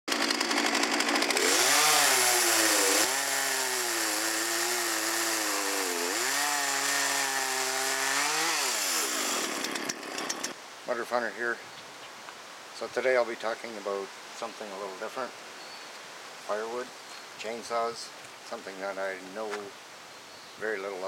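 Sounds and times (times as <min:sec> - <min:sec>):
chainsaw engine revving: 0:00.1 - 0:10.6.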